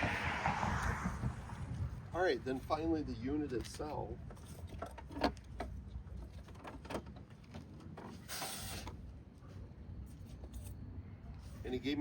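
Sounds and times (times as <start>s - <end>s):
low outdoor rumble: 0.0s - 7.9s
brief scrape: 8.2s - 9.0s.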